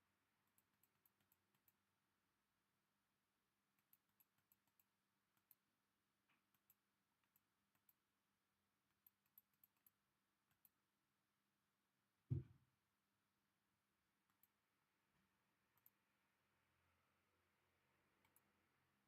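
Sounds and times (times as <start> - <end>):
computer mouse clicks: 0.4 - 1.9, 3.7 - 8.1, 8.8 - 10.8, 14.2 - 14.6, 15.7 - 16.1, 18.2 - 18.6
dull low thump: 12.3 - 12.6.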